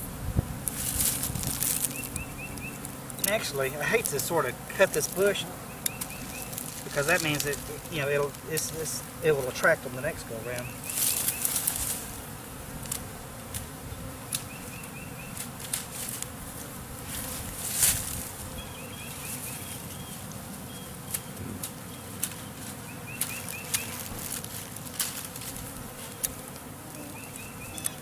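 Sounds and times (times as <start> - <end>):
bee swarm humming: 0.0 - 28.0
rustle: 0.0 - 28.0.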